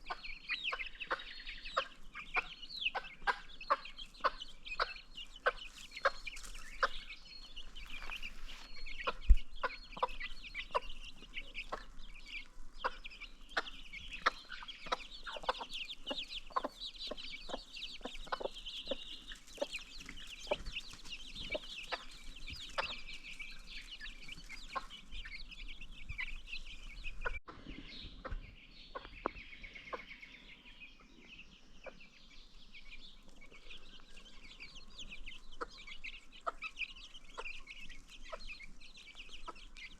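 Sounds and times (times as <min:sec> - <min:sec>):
baby chicks chirping: 0:00.0 - 0:39.9
chickens clucking: 0:00.0 - 0:39.9.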